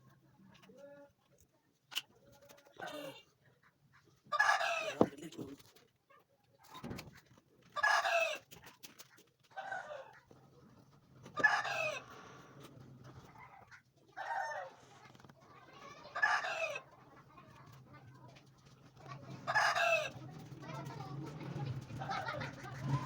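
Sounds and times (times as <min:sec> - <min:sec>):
chickens calling: 0:03.6 - 0:05.2, 0:11.3 - 0:12.2, 0:16.1 - 0:17.2, 0:19.3 - 0:20.5, 0:21.6 - 0:23.0.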